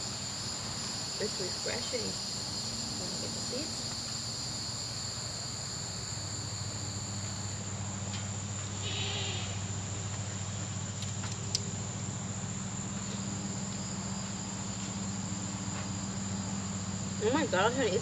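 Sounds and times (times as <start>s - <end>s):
crickets trilling: 0.0s - 18.0s.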